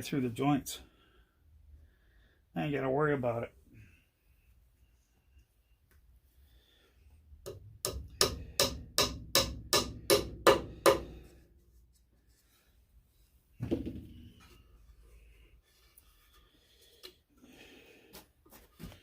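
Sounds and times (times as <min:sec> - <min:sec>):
hammer striking wood: 0:07.5 - 0:11.3.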